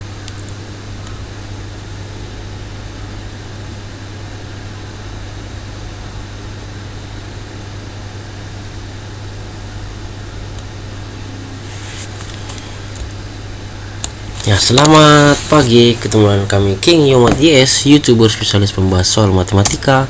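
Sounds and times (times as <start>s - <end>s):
steady low hum: 0.0s - 20.0s
constant hiss: 8.8s - 20.0s.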